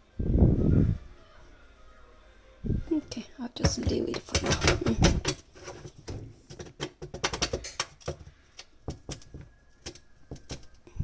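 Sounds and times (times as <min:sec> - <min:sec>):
dishwasher filter parts clicking: 0:03.7 - 0:10.8.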